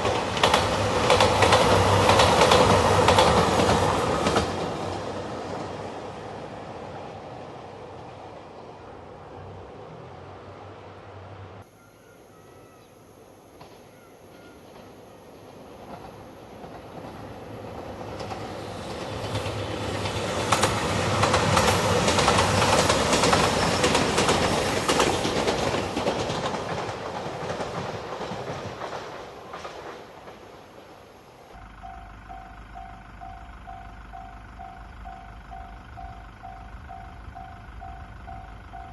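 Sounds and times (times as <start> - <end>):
wheels clicking over rail joints: 0.0 - 6.1, 13.6 - 38.9
diesel train rumbling past: 0.0 - 12.3, 13.0 - 38.9
level crossing warning bell: 31.6 - 38.9.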